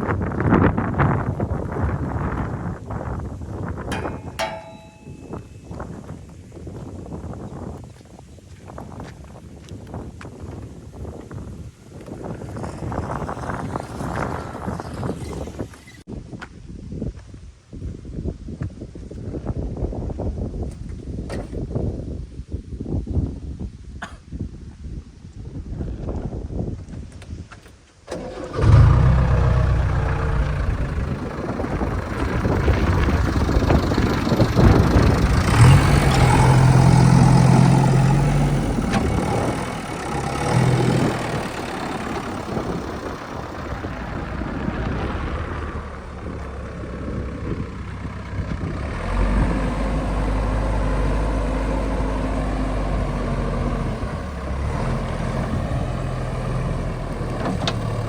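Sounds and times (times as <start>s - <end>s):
diesel machinery engine running: 28.1s - 58.0s.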